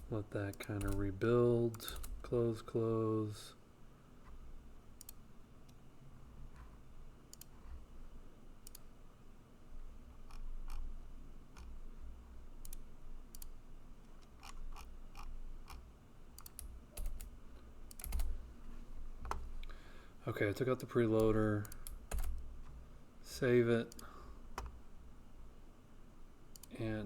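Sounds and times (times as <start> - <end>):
low steady hum: 0.0 - 27.0
computer mouse and keyboard clicks: 12.6 - 15.8, 16.4 - 17.3, 17.9 - 18.3.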